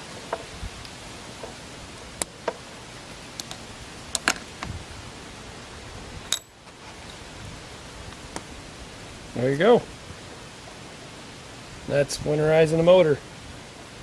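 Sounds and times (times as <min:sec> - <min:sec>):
steady hiss: 0:00.0 - 0:14.0
metallic clicks and clinks: 0:06.3 - 0:06.6.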